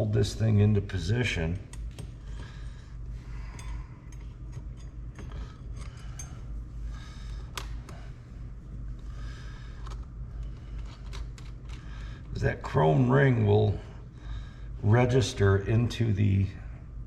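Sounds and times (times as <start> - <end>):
steady low hum: 0.0 - 17.0
small metal parts clicking: 9.8 - 12.0.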